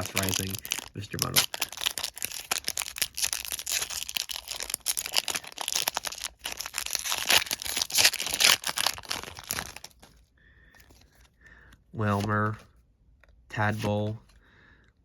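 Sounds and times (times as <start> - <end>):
foil wrapper tearing and crinkling: 0.0 - 10.1.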